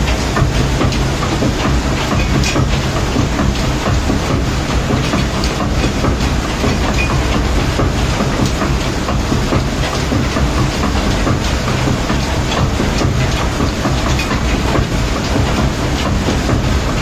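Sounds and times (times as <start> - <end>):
irregular clicking clatter: 0.0 - 17.0.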